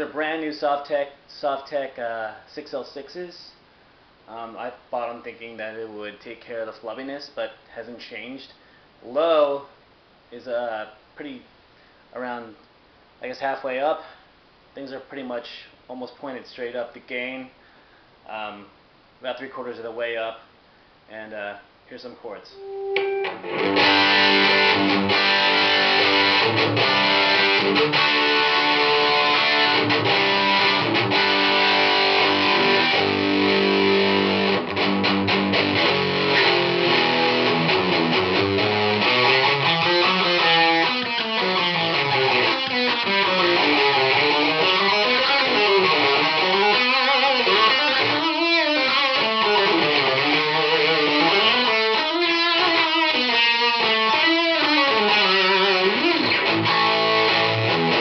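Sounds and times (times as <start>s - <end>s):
electric guitar chords: 22.6s - 58.0s.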